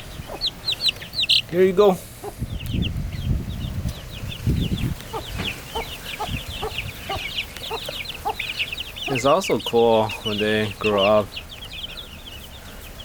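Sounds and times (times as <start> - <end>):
chicks peeping: 0.0 - 13.0
microphone handling rumble: 2.2 - 7.2
low clucking: 4.8 - 10.2.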